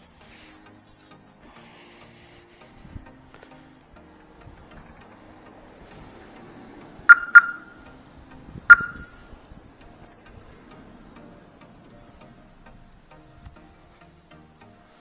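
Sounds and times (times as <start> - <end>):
sharp ringing pings: 7.1 - 7.8, 8.7 - 9.2.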